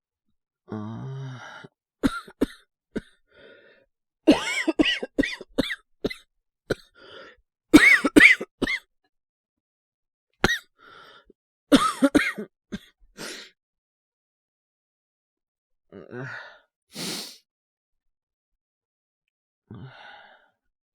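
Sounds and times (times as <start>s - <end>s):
man coughing hard: 4.3s - 6.2s, 7.8s - 8.8s, 11.7s - 12.9s
short breaths: 17.0s - 17.4s.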